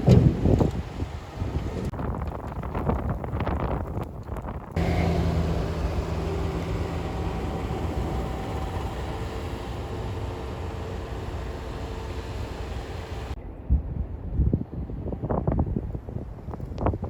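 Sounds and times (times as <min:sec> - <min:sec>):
large vehicle engine hum: 0:00.0 - 0:02.6, 0:04.8 - 0:13.4.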